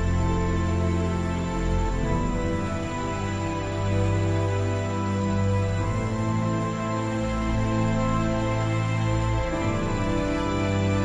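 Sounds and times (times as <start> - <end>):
soft sustained chords: 0.0 - 11.0.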